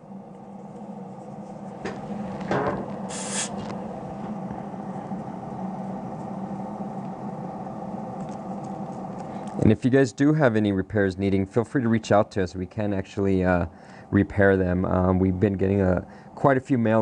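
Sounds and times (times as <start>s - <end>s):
short hiss of air: 3.1s - 3.7s.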